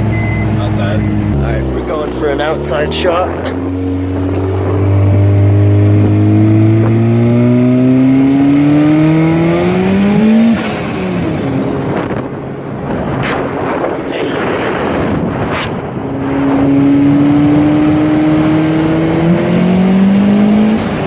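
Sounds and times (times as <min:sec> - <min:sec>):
turbocharged car engine accelerating: 0:00.0 - 0:21.0
wind buffeting microphone: 0:09.3 - 0:21.0.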